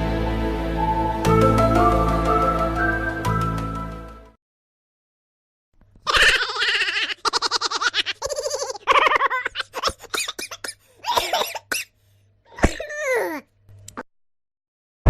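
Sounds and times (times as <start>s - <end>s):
comic pulsing laughter: 6.1s - 10.2s
cough-like bursts and clicks: 12.5s - 13.0s.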